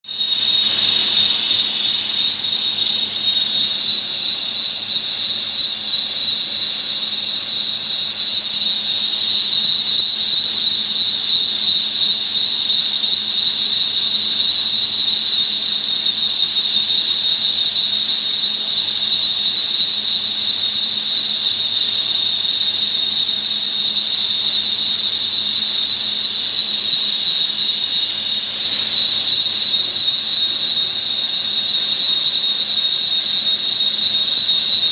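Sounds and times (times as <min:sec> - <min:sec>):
lathe squealing: 0:00.0 - 0:10.2, 0:26.4 - 0:34.9
machine humming: 0:00.1 - 0:03.5.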